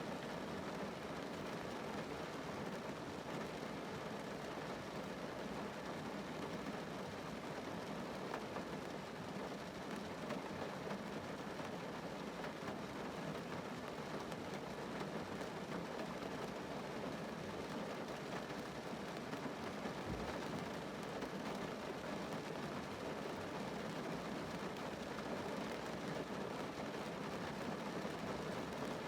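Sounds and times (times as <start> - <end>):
rain on car roof: 0.0 - 29.0.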